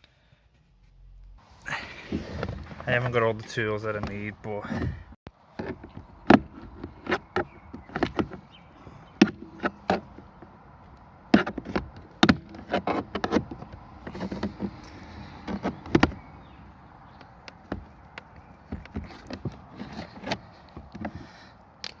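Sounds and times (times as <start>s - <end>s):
clicks and knocks on plastic trim: 11.3s - 16.4s, 17.1s - 22.0s.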